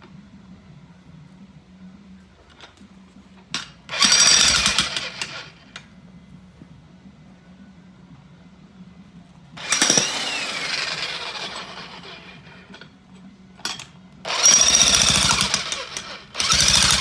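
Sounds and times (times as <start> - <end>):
jackhammer pounding: 3.9 - 5.4, 9.6 - 12.3, 14.3 - 17.0.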